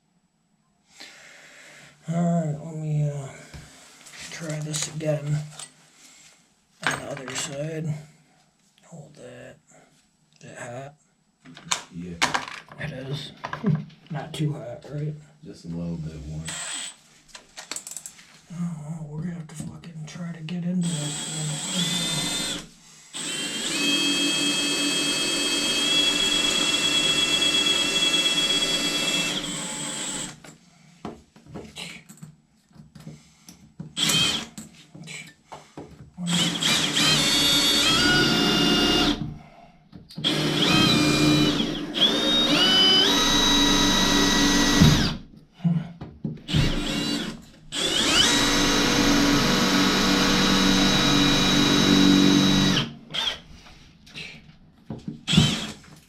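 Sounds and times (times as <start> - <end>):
power drill drilling: 16.5 - 17.0, 20.8 - 30.4, 34.0 - 34.5, 36.3 - 39.4, 40.2 - 45.2, 46.5 - 53.5, 55.3 - 55.8.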